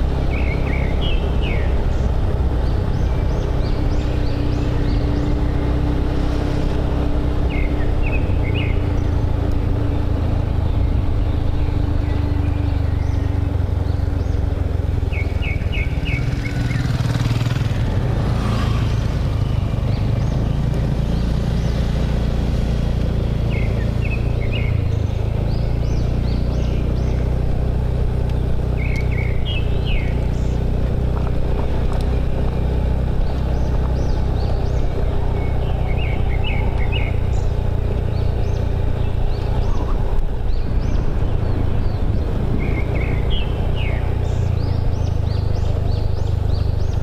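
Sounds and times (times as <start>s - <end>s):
birds chirping: 0.0s - 47.0s
motorbike engine running: 0.0s - 47.0s
wind and road noise: 0.0s - 47.0s.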